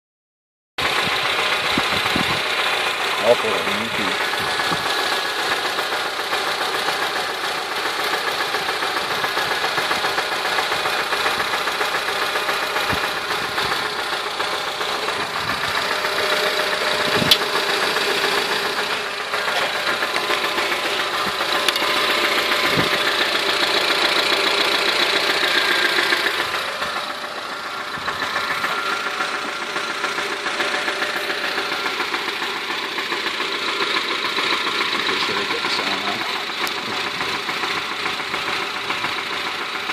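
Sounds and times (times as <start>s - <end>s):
car bearing noise: 4.2s - 35.2s.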